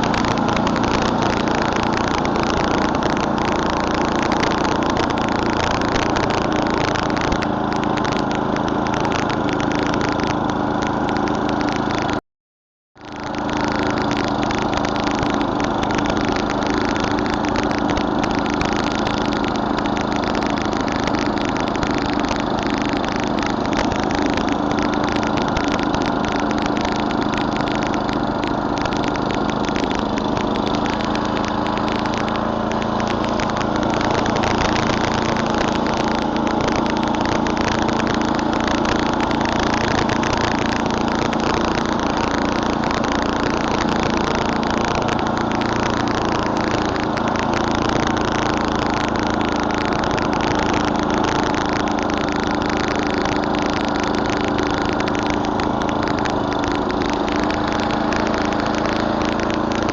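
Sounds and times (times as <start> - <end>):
snowblower engine running: 0.0 - 12.2, 13.0 - 59.9.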